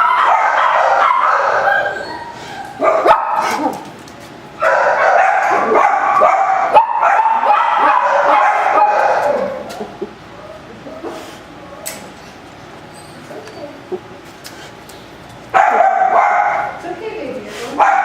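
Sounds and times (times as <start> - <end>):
dogs barking and yipping: 0.0 - 4.0, 4.6 - 11.4, 15.5 - 16.8, 17.8 - 18.0.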